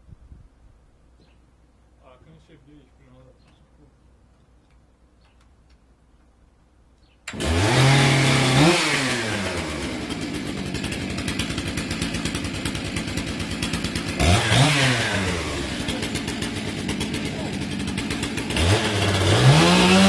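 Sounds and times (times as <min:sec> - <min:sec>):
chainsaw revving: 0:07.3 - 0:20.0.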